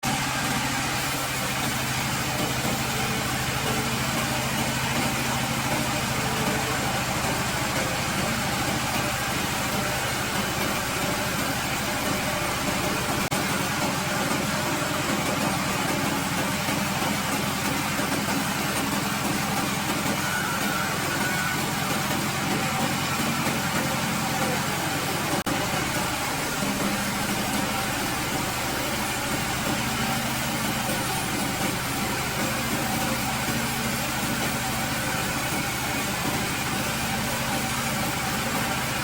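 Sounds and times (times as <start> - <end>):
woodworking machine humming: 0.0 - 39.0.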